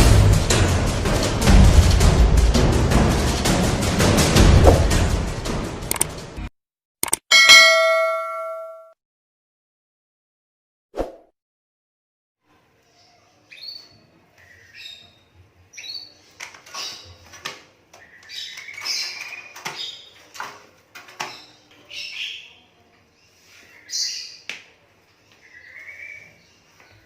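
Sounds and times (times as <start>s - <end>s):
sharp clicks: 5.8s - 6.2s, 7.0s - 7.3s.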